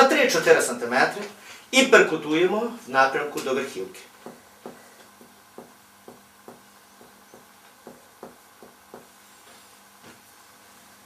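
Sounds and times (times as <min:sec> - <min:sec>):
dull taps on chest: 0:04.2 - 0:09.1.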